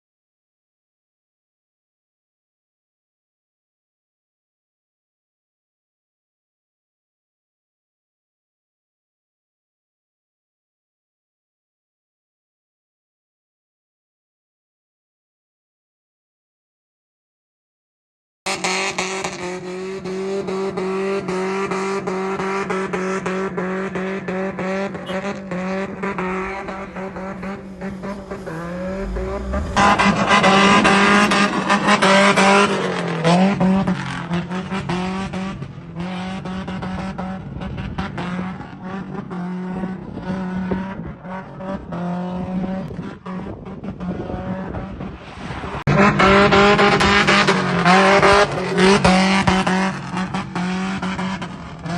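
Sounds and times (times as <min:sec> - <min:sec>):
car engine at high revs: 0:18.5 - 0:51.9
tyres squealing and skidding: 0:23.7 - 0:33.4.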